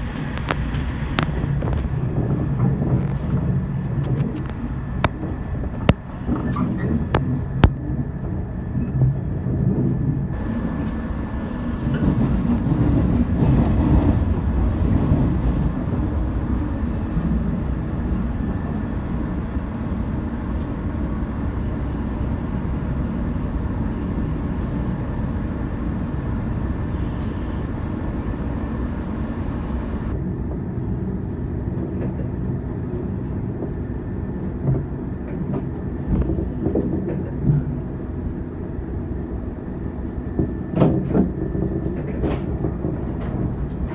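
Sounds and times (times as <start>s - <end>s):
train running on rails: 0.0s - 43.9s.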